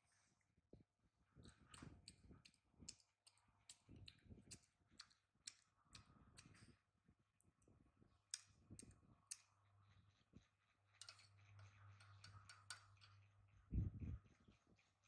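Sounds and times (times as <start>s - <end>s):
faint clicks and taps: 1.4s - 6.8s, 7.4s - 9.7s, 10.4s - 13.3s.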